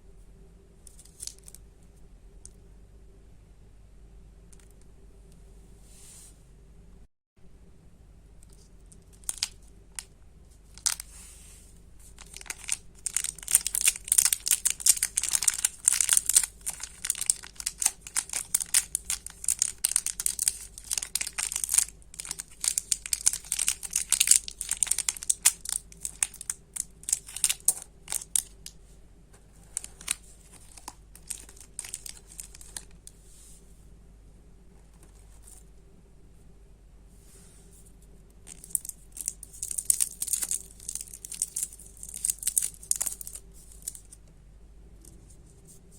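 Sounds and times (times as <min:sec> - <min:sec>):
candy wrappers crinkling and tearing: 0:08.5 - 0:11.1, 0:12.0 - 0:28.8, 0:29.6 - 0:33.1, 0:38.4 - 0:44.2.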